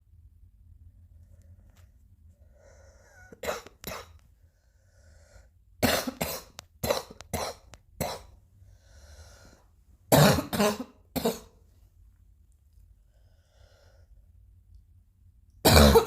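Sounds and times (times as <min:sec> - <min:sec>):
noisy breath in: 0:01.3 - 0:03.3, 0:04.4 - 0:05.6, 0:08.6 - 0:09.8, 0:13.0 - 0:14.3
person coughing: 0:03.0 - 0:04.2, 0:05.8 - 0:08.4, 0:10.1 - 0:11.6, 0:15.6 - 0:16.0.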